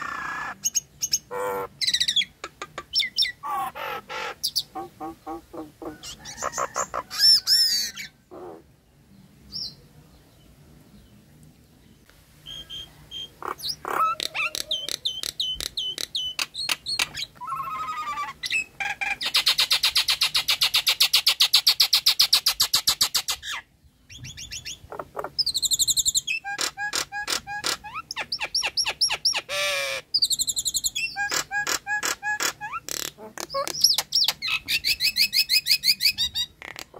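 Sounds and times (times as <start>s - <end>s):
myna calling: 0.0s - 8.8s, 12.4s - 19.9s, 24.4s - 25.6s, 30.9s - 36.9s.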